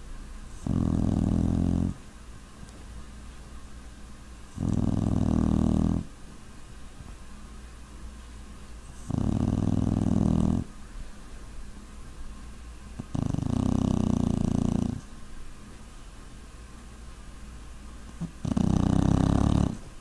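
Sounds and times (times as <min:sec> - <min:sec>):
puppy snoring: 0:00.5 - 0:02.0, 0:04.5 - 0:06.1, 0:08.9 - 0:10.7, 0:13.0 - 0:15.1, 0:18.2 - 0:19.9.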